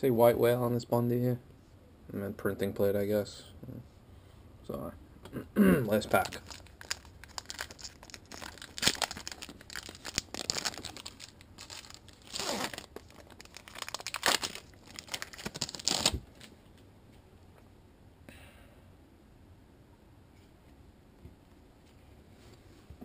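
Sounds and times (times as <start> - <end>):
card pack wrapper crinkling: 5.9 - 16.6.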